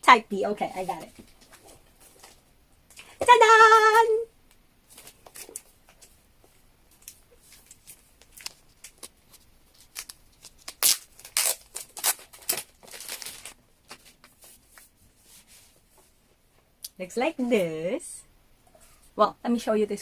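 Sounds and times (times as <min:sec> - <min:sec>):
plastic wrap and card crinkling: 0:04.9 - 0:06.1, 0:06.9 - 0:14.9
packaging rustle: 0:07.0 - 0:14.4.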